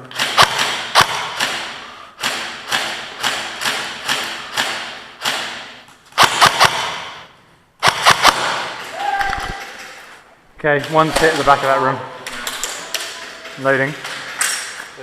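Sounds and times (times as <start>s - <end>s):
airsoft gun shots echoing: 0.1s - 8.9s.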